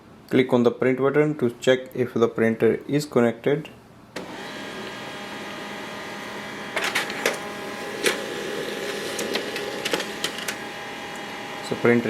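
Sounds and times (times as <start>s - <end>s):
printer motor hum: 4.2s - 12.0s
paper feed clicks: 6.6s - 11.4s.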